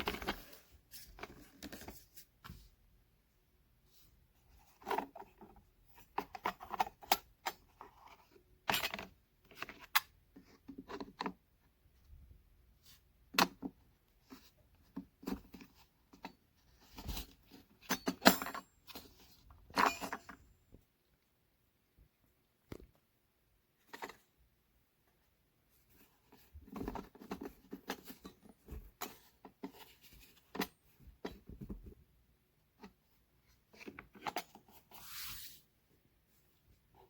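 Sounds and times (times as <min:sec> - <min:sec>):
rustling: 0:32.8 - 0:37.0.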